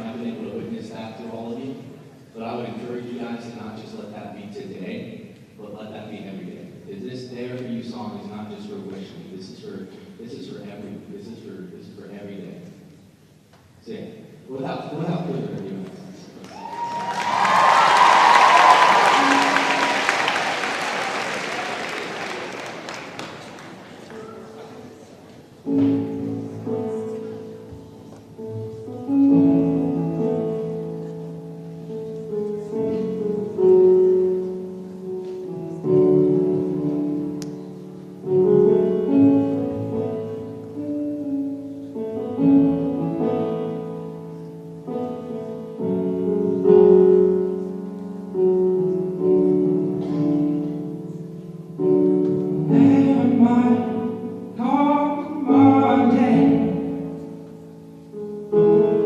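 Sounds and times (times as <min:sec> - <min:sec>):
piano playing slow chords: 0:16.8 - 0:59.0
person singing: 0:52.5 - 0:57.0.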